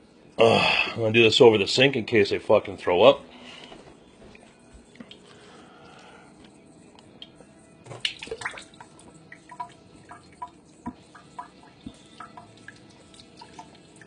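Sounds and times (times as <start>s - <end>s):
small wet drips and clicks: 4.9s - 7.4s, 8.0s - 14.0s.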